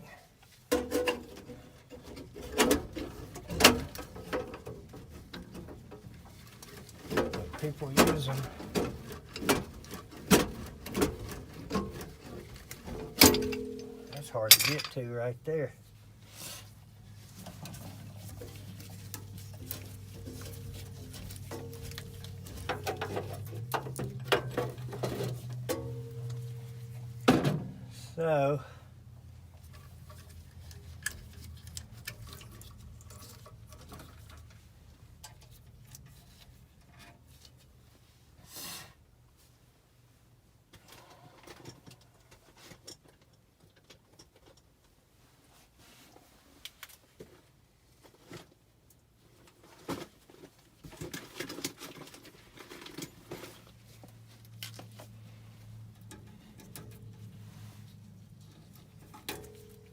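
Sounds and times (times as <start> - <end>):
hand tools clicking and scraping: 0.7 - 15.0, 16.3 - 27.3
low hum: 18.4 - 28.2.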